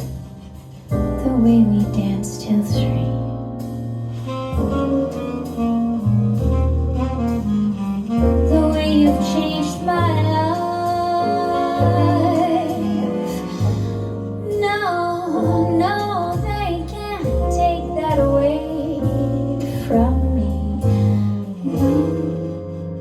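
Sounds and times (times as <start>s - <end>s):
woman singing a slow ballad: 1.1s - 3.4s, 8.5s - 23.0s.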